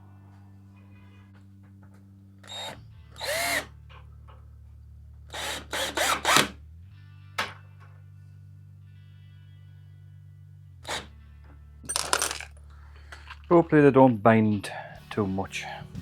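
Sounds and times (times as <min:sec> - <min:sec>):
background music: 0:00.0 - 0:16.0
power drill running: 0:02.4 - 0:03.7, 0:05.3 - 0:06.6, 0:10.9 - 0:11.1.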